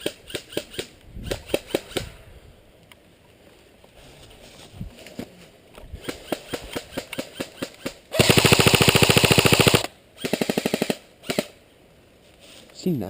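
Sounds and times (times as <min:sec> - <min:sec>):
airsoft rifle firing: 0:00.0 - 0:02.1, 0:06.0 - 0:11.6.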